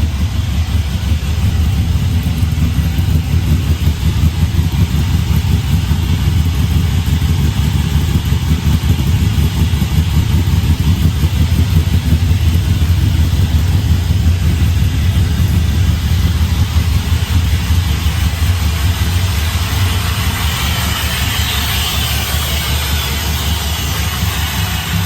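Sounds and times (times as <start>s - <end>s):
engine idling: 0.0s - 25.0s.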